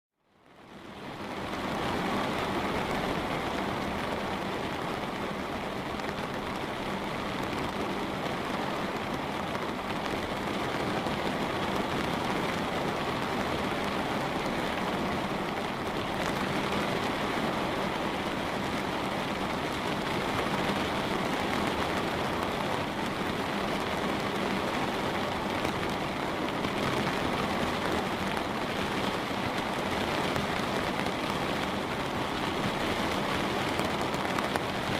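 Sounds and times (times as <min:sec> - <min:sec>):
rain on a window pane: 0:00.2 - 0:34.9.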